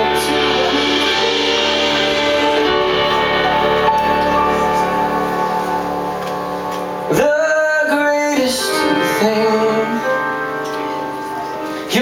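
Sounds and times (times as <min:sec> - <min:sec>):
instrumental held chords: 0:00.0 - 0:12.0.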